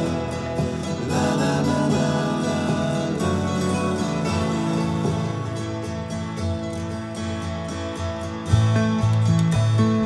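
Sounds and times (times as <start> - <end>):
person singing: 0.0 - 6.4
acoustic guitar: 0.0 - 10.0.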